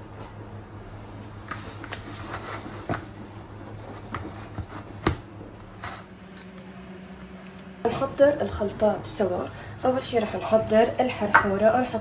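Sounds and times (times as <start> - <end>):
steady low hum: 0.0 - 12.0
hands shaping bread dough: 1.5 - 6.1.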